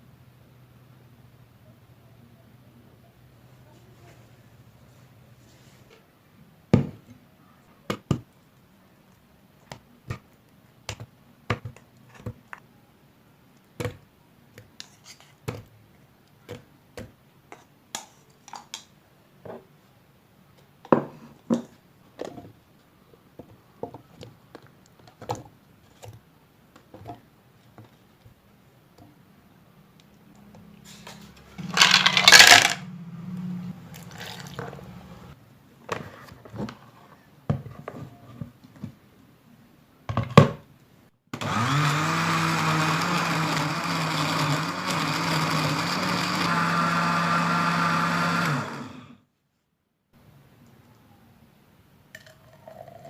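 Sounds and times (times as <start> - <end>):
utensils and containers knocking: 31.6 - 32.8.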